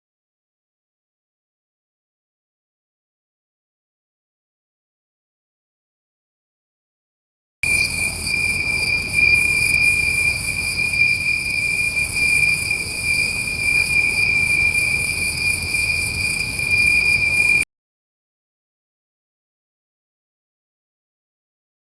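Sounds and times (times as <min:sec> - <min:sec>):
crickets chirring: 0:07.6 - 0:17.6.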